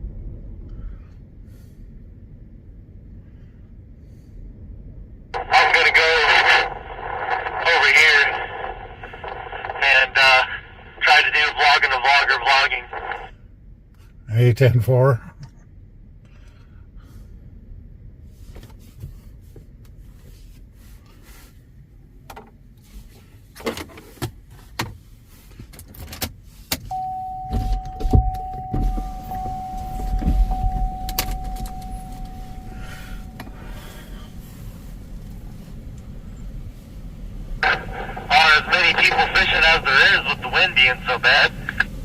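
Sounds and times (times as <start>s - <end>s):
steady electronic tone: 26.9s - 34.4s.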